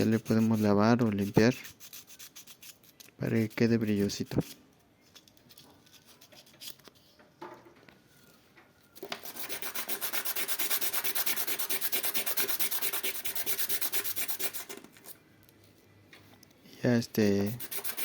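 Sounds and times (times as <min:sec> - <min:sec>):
hand sanding and scrubbing: 0:00.0 - 0:02.7, 0:09.2 - 0:14.8, 0:17.3 - 0:18.0
faint handling sounds: 0:02.6 - 0:09.2, 0:14.7 - 0:17.5.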